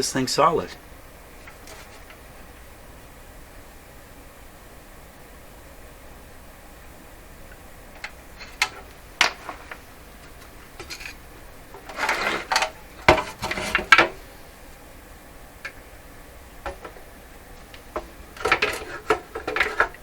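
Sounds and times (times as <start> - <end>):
radio parts clicking and rattling: 1.3 - 2.5, 7.5 - 14.3, 16.6 - 20.0
knocks and scraping: 1.4 - 2.2, 8.0 - 14.4, 16.6 - 20.0.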